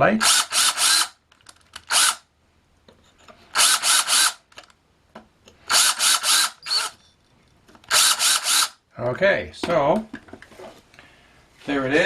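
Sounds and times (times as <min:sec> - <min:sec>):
power drill short bursts: 0:00.2 - 0:01.2, 0:01.9 - 0:02.2, 0:03.5 - 0:04.4, 0:05.7 - 0:07.0, 0:07.9 - 0:08.8.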